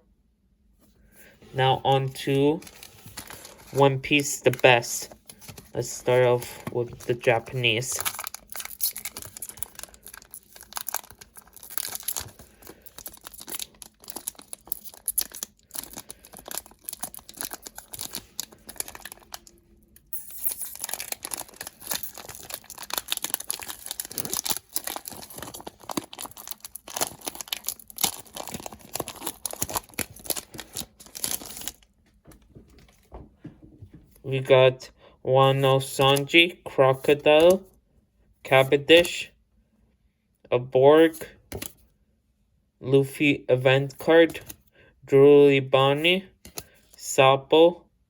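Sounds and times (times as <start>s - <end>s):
foil wrapper tearing and crinkling: 2.6s - 3.8s, 5.2s - 19.6s, 20.4s - 31.9s.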